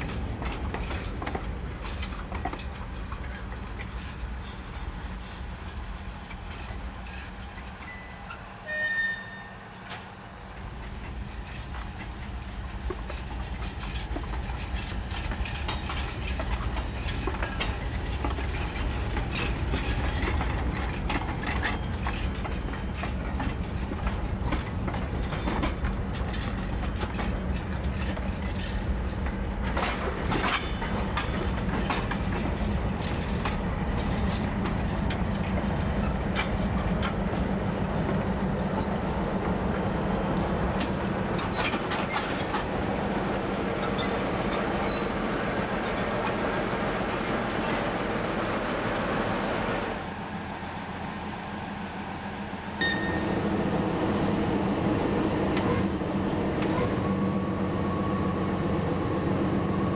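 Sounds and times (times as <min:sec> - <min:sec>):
train wheels clattering on track: 0:00.0 - 0:59.9
diesel engine drone: 0:48.8 - 0:59.9.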